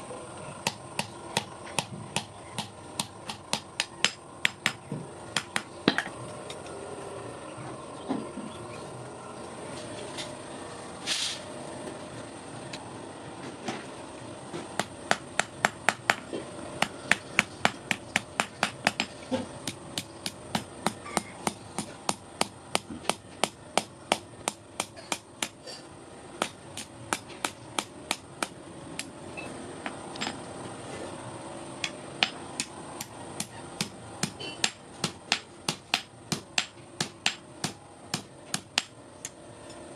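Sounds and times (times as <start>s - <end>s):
steady high whine: 0.0s - 39.9s
hammer striking iron on anvil: 0.6s - 4.8s, 16.8s - 25.6s, 32.2s - 38.9s.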